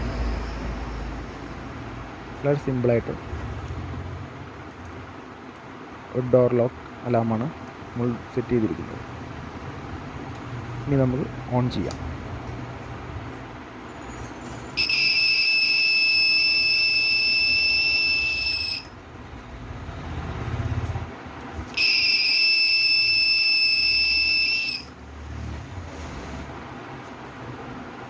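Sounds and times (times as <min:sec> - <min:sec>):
high-pitched alarm buzzer: 0:14.8 - 0:19.0, 0:21.7 - 0:25.0.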